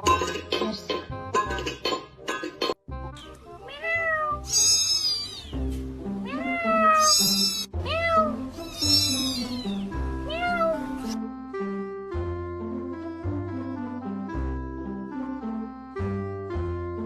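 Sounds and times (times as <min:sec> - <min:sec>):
background music: 0:00.0 - 0:17.0
cat meowing: 0:03.6 - 0:05.6, 0:06.2 - 0:11.2.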